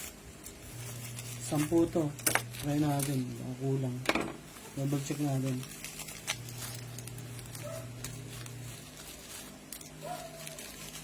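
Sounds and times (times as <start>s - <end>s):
packaging rustling: 0.0s - 3.3s, 4.5s - 11.0s
steady low hum: 0.0s - 11.0s.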